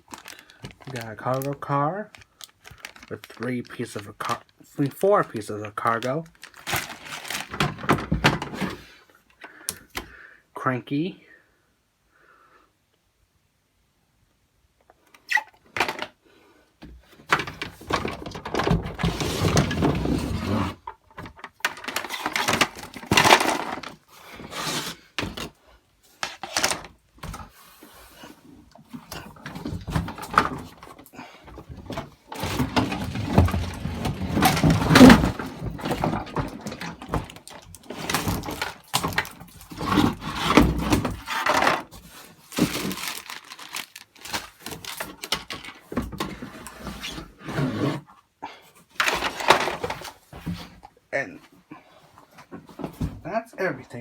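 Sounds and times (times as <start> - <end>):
plastic packaging rustling and crinkling: 0.0 - 9.0, 17.1 - 47.5, 48.9 - 50.9.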